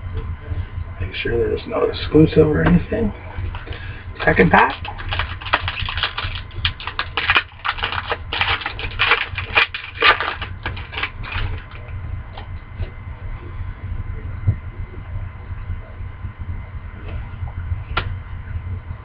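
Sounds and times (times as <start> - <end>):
foil wrapper crinkling: 3.6 - 11.9.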